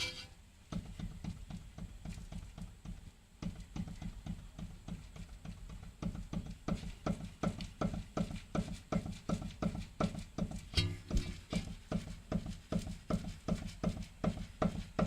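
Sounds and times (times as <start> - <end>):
low steady hum: 0.0 - 0.6, 10.6 - 12.0
rapid sharp knocking: 0.7 - 15.0.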